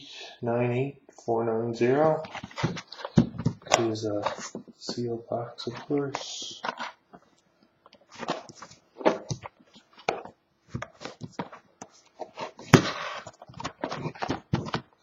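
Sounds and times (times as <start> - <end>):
cardboard knocks: 2.4 - 3.8.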